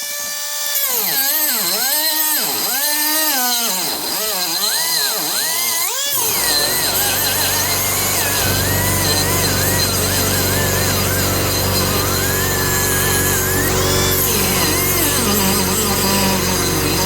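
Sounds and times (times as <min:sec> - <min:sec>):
air die grinder cutting metal: 0:00.1 - 0:17.0
low steady running noise: 0:06.3 - 0:17.0.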